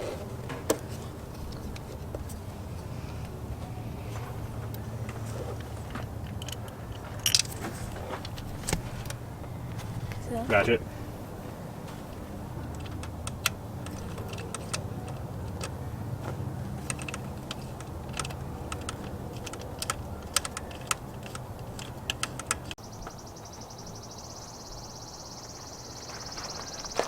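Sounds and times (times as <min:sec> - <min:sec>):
tools clicking and tapping: 0:04.1 - 0:09.2, 0:11.9 - 0:22.8.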